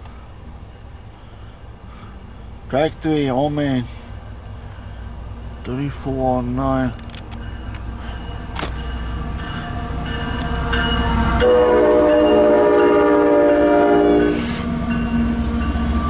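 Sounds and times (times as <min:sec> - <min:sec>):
locomotive engine rumble: 0:00.0 - 0:16.0
train air horn chord: 0:11.4 - 0:14.7.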